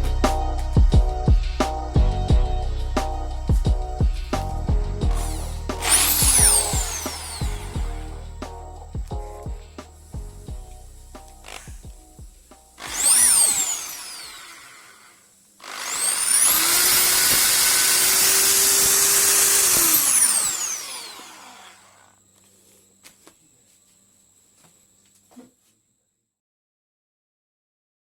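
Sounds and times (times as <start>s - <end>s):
electric drill motor whine: 5.0s - 8.4s, 11.4s - 12.0s, 12.7s - 22.3s.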